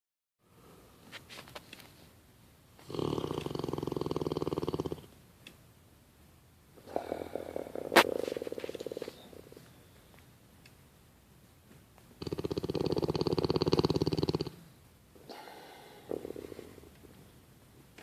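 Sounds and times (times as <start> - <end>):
person snoring: 2.8 - 5.1, 6.8 - 9.6, 12.2 - 14.6, 15.2 - 17.0.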